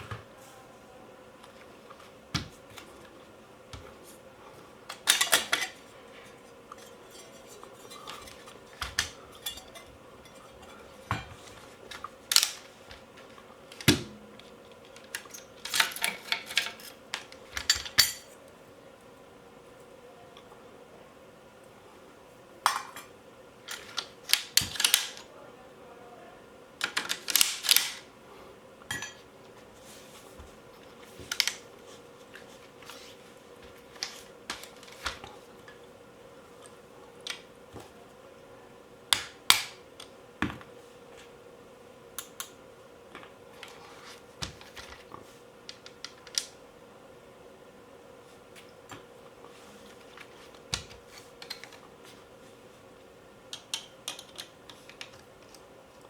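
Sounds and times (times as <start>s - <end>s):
faint steady hum: 0.0s - 56.0s
clicks and knocks of gun parts: 4.9s - 18.3s, 23.7s - 25.3s, 26.8s - 28.1s, 53.5s - 55.6s.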